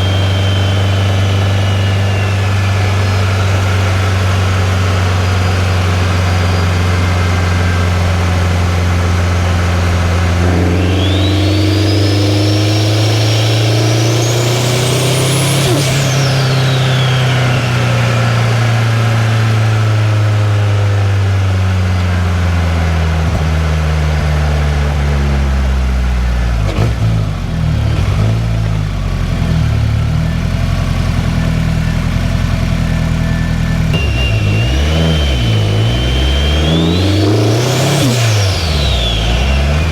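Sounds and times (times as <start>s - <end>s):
turbo whistle: 0.0s - 20.4s, 30.0s - 39.9s
car engine revving: 0.0s - 39.9s.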